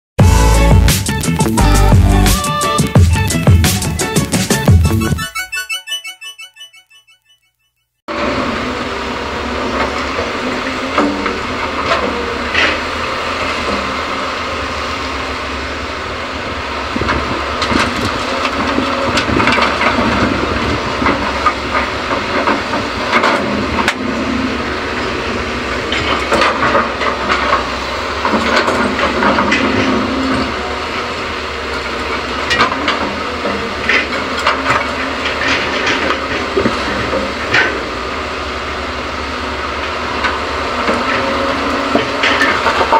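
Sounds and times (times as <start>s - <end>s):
excavator engine running: 0.2s - 7.1s, 8.1s - 42.9s
dirt clattering into dump truck: 16.9s - 38.1s, 39.6s - 42.9s.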